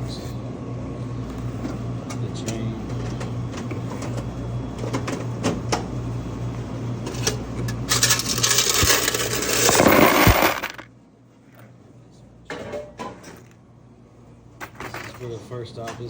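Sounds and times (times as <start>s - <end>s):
loud rattling noise: 7.9s - 10.9s.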